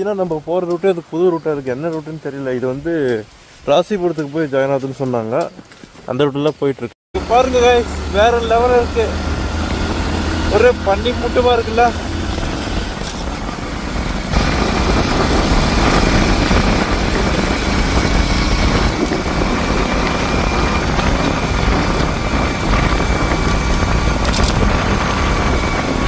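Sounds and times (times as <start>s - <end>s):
motorcycle engine: 7.2s - 26.0s
wind on microphone: 7.3s - 26.0s.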